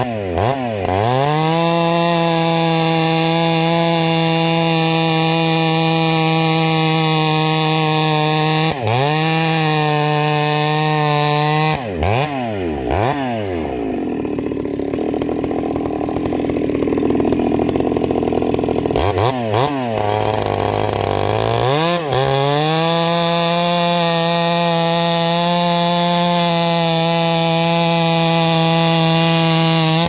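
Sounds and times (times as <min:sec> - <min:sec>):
chainsaw running at full throttle: 0:00.0 - 0:30.0.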